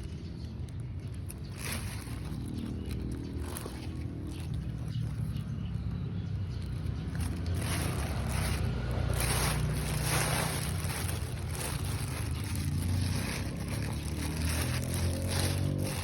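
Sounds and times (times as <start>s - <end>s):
wind: 0.0s - 16.0s
boat motor running: 6.5s - 16.0s.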